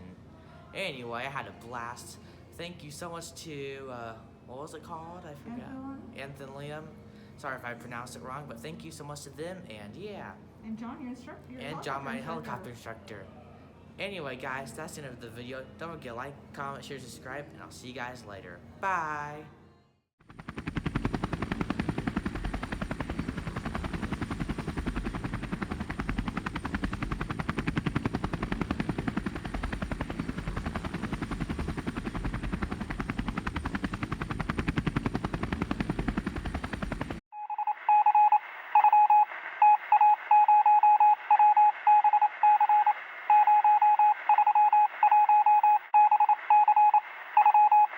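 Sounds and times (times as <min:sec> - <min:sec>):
helicopter rotor and engine: 0:10.9 - 0:12.9, 0:20.2 - 0:37.2
electronic beeps: 0:37.4 - 0:47.9.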